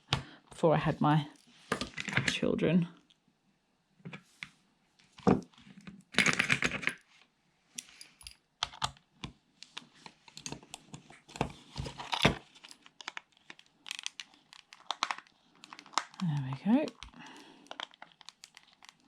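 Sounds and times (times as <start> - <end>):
plastic scraping crackle: 11.2 - 19.0
plastic casing clicks and snaps: 13.0 - 19.0.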